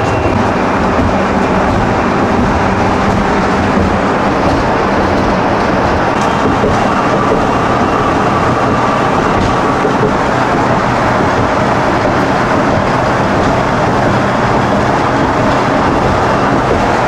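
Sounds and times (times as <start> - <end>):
road and engine noise in vehicle: 0.0 - 17.0.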